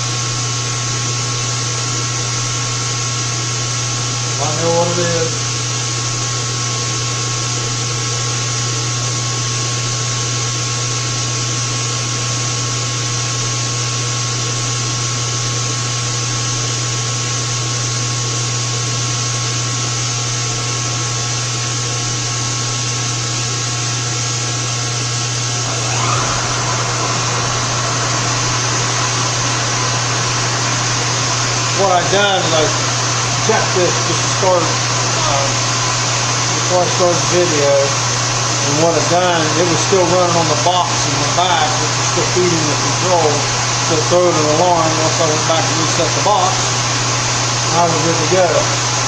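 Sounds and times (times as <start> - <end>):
milling machine humming: 0.0 - 49.0
faint steady whine: 25.5 - 49.0
short rising sweep: 25.6 - 36.6.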